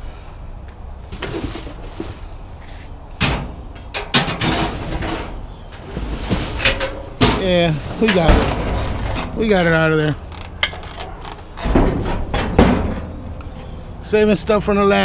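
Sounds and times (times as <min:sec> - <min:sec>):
scrap metal knocking and clattering: 0:03.2 - 0:13.5.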